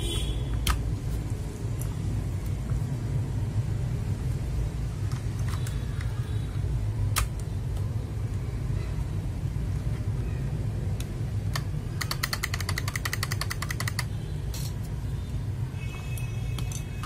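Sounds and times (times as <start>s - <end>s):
mechanical keyboard key clicks: 11.0s - 14.2s.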